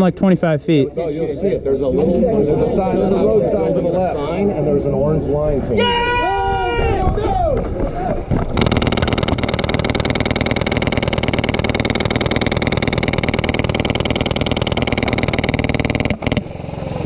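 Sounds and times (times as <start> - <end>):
airsoft machine gun full-auto rattle: 8.6 - 17.0.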